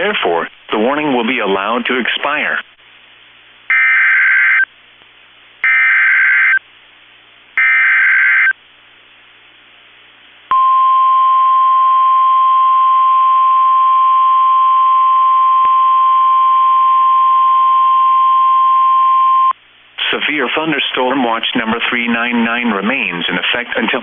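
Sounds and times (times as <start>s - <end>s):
steady alarm tone: 3.7s - 4.7s, 5.6s - 6.6s, 7.6s - 8.6s.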